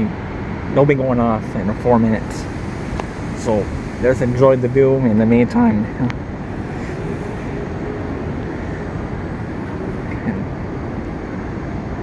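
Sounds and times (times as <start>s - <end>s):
city traffic rumble: 0.0s - 12.0s.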